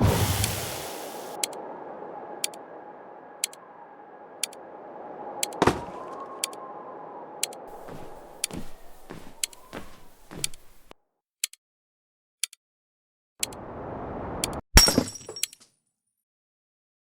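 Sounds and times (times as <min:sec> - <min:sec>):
loud sudden whoosh: 0:00.0 - 0:10.3
steady whistle-like tone: 0:00.0 - 0:10.9
clock ticking: 0:02.4 - 0:02.6, 0:03.4 - 0:03.6, 0:07.4 - 0:11.6.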